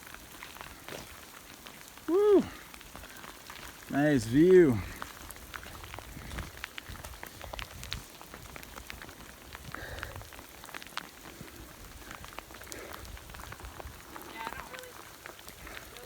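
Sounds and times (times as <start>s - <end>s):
rain hissing: 0.0s - 16.0s
raindrop ticks: 0.0s - 16.0s.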